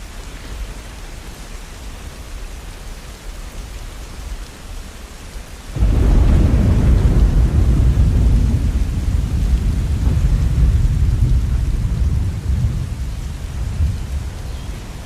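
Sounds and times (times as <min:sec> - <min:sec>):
steady rainfall: 0:00.0 - 0:15.0
thunder rumbling: 0:05.8 - 0:15.0.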